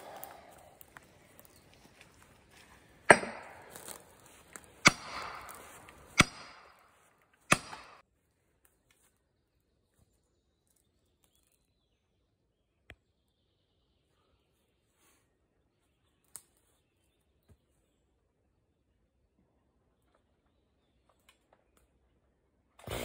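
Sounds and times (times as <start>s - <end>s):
sledgehammer blows: 3.0s - 4.0s, 4.8s - 6.8s.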